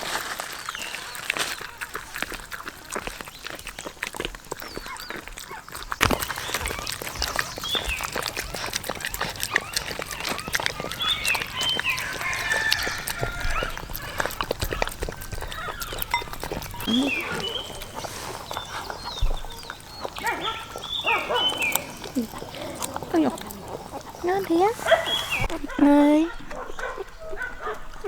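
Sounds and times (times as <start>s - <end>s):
dogs eating from bowls: 0.0s - 28.0s
high chirping animal cries: 6.2s - 25.5s.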